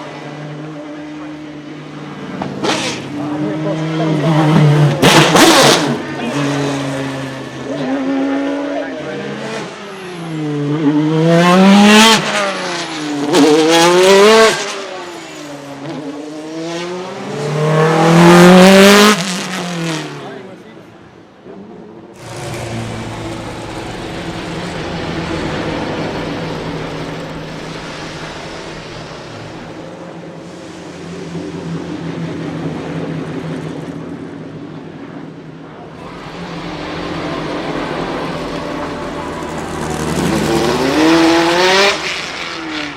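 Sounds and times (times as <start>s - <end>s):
racing car engine accelerating: 22.2s - 33.0s, 35.8s - 42.9s.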